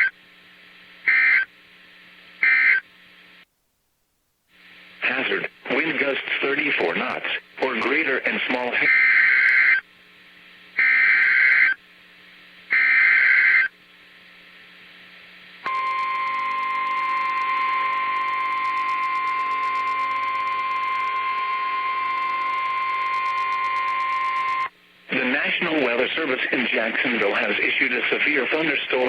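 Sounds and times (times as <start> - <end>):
faint radio hiss: 0.0 - 29.0
steady warning alarm tone: 15.6 - 24.7.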